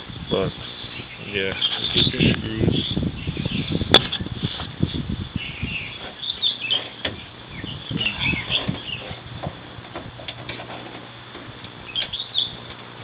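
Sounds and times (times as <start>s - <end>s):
small birds chirping: 0.1s - 3.9s, 4.8s - 9.3s, 11.7s - 12.8s.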